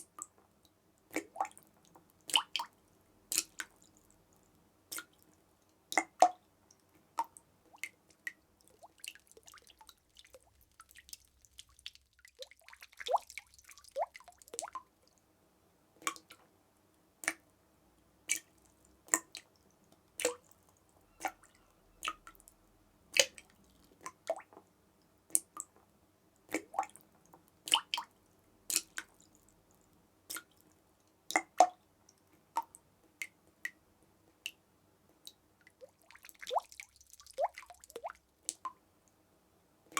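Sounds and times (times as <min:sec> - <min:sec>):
water dripping: 0:00.0 - 0:15.3, 0:16.0 - 0:16.5, 0:17.2 - 0:17.5, 0:18.2 - 0:39.2.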